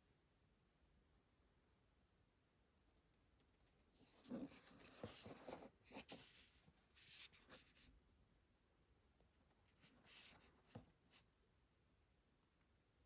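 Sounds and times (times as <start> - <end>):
paper and cardboard rustling: 4.1 - 7.6.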